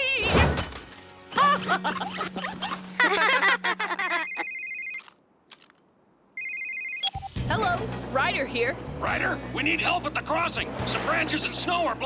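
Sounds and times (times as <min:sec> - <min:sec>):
phone ringing with electronic beep: 0:04.2 - 0:05.2, 0:06.4 - 0:07.5.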